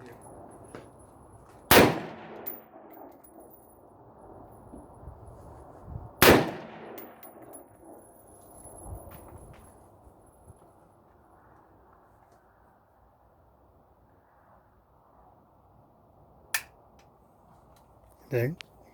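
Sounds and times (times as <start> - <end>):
gunshots with echo: 1.7 - 2.6, 6.2 - 7.2.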